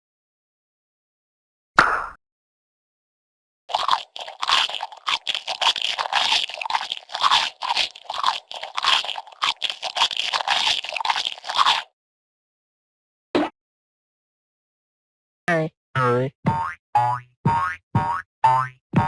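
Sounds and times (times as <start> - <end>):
crisp crunches: 3.7 - 11.9.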